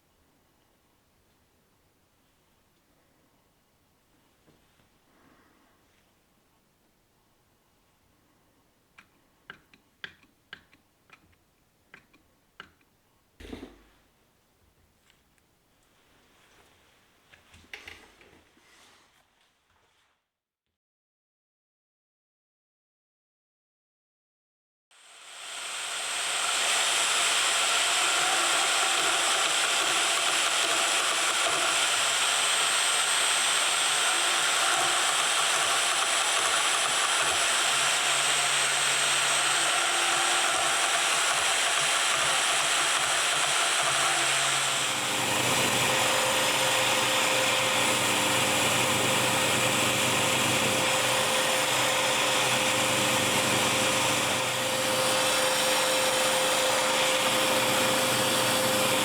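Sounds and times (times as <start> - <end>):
power tool running: 25.0 - 59.0.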